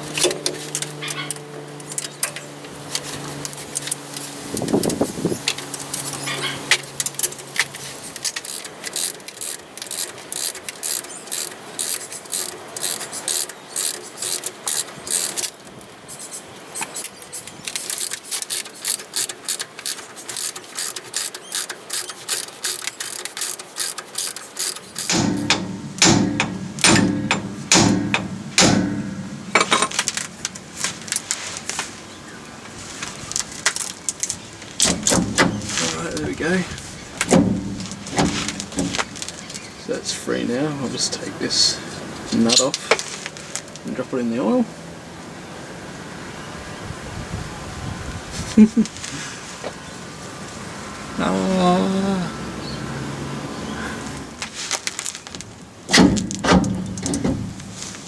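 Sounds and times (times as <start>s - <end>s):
socket ratchet clicking: 0.0s - 28.9s.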